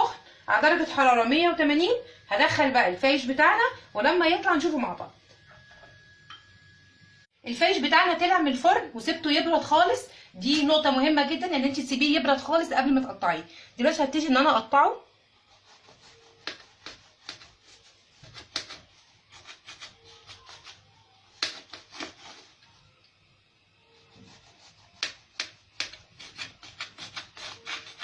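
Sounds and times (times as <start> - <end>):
knife slicing bread: 15.4 - 22.6, 23.9 - 28.0.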